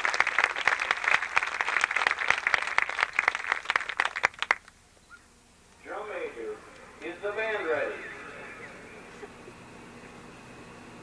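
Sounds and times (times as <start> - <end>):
audience applauding: 0.0 - 4.8, 6.6 - 10.2.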